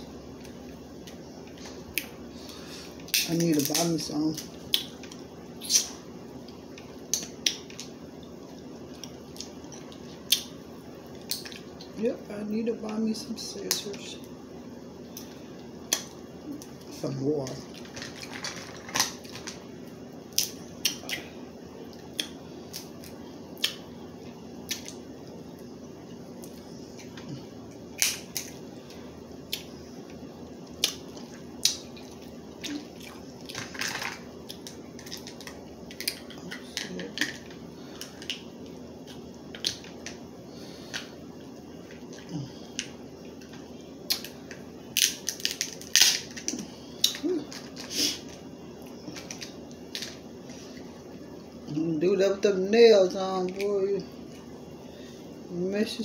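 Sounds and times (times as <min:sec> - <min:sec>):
crab shells cracking: 0:28.0 - 0:28.6, 0:30.8 - 0:40.2, 0:42.0 - 0:47.9.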